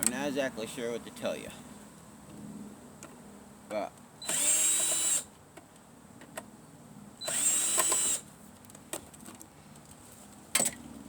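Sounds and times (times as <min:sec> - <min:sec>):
electric drill-driver whirring: 0:04.2 - 0:05.3, 0:07.2 - 0:08.3.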